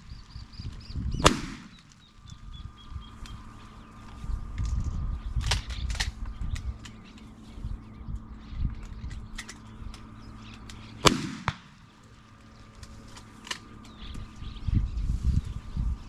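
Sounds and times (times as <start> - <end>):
shotgun shot: 1.2 - 1.9, 11.0 - 11.9.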